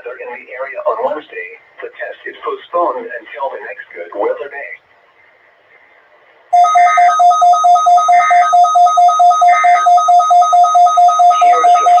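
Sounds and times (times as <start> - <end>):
rapid two-pitch alert beeping: 6.6 - 12.0
digital data bursts: 7.9 - 12.0.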